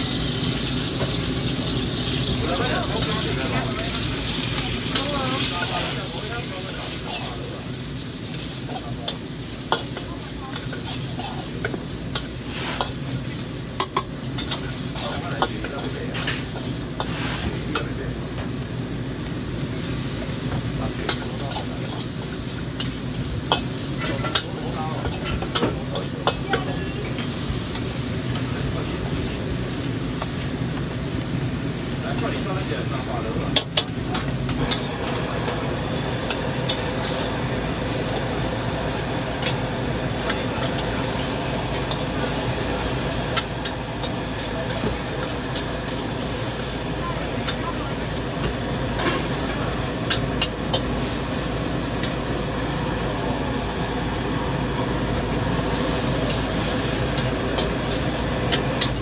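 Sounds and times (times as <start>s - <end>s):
food sizzling in a wok: 0.0s - 59.0s
spatula scraping a wok: 12.2s - 13.0s, 16.1s - 17.7s.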